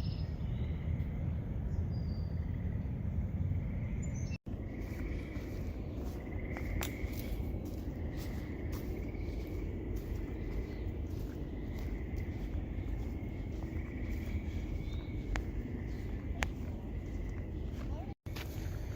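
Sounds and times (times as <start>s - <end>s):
faint insect calls: 0.0s - 18.9s
wind rumble on microphone: 0.0s - 18.9s
bird calls: 3.7s - 18.1s.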